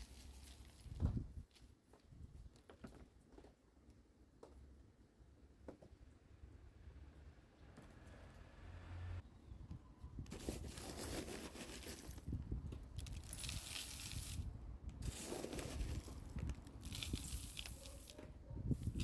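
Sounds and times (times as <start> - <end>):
hands rustling potting soil: 0.0 - 4.7, 10.2 - 19.0.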